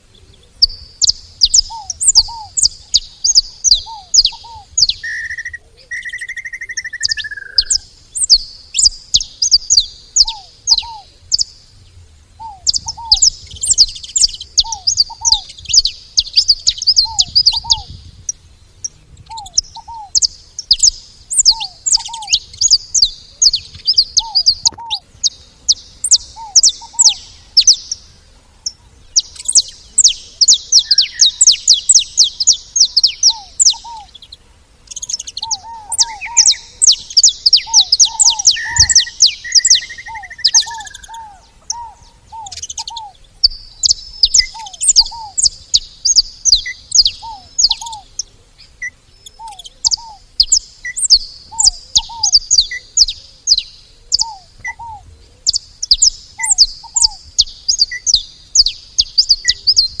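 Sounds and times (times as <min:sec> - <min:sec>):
lower short bird call: 0:00.0 - 0:08.4, 0:20.8 - 0:50.2
finches chipping: 0:12.4 - 0:18.1, 0:19.3 - 1:00.0.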